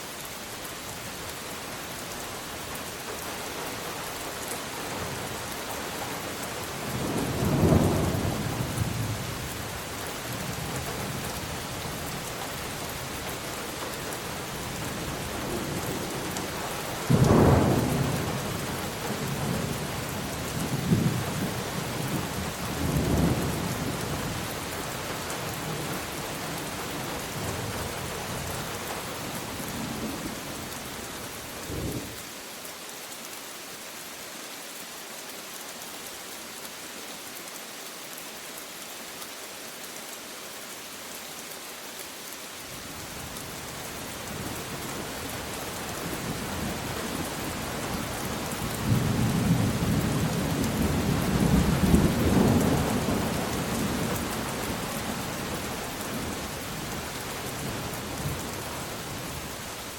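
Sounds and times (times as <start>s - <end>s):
steady rain falling: 0.0s - 59.9s
rolling thunder rumbles: 17.1s - 19.8s.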